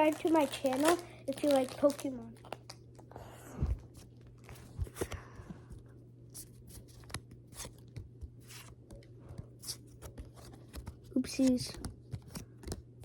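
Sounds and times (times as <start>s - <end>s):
papery rustles and scrapes: 0.0s - 2.2s
faint steady hum: 0.0s - 13.0s
cards tapping and clicking: 6.7s - 13.0s.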